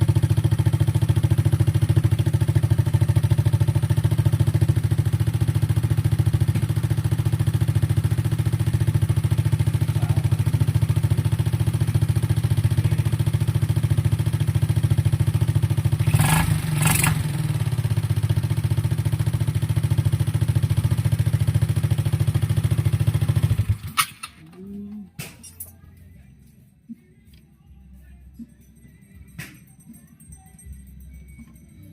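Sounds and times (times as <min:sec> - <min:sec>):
scooter engine idling: 0:00.0 - 0:24.0.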